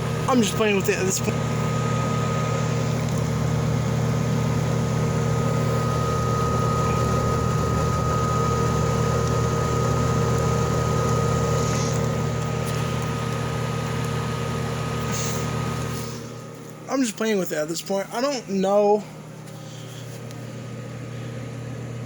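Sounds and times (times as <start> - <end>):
dehumidifier fan humming: 0.0 - 22.0.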